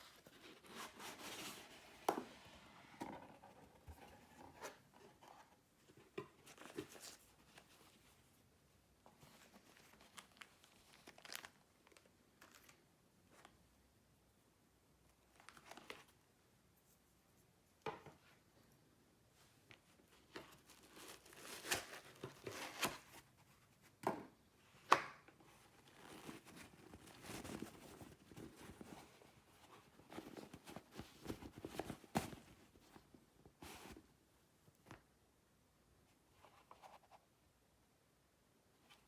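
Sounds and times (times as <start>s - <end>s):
plastic packaging crinkling: 9.7s - 12.8s.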